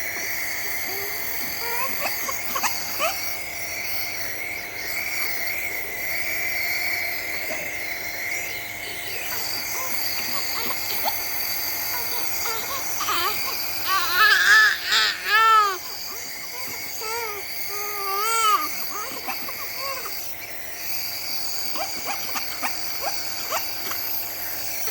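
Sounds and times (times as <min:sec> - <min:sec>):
steady high background hum: 0:00.0 - 0:24.9
toddler whiny babbling cries: 0:00.7 - 0:03.4, 0:09.1 - 0:20.4, 0:21.7 - 0:24.9.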